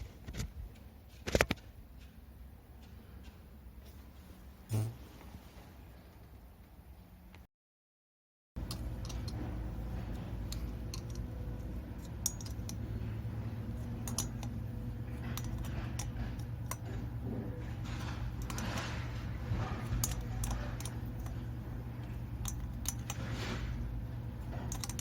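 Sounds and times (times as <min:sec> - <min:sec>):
steady low hum: 0:00.0 - 0:05.5, 0:08.6 - 0:25.0
small metallic clicks and clinks: 0:08.6 - 0:25.0.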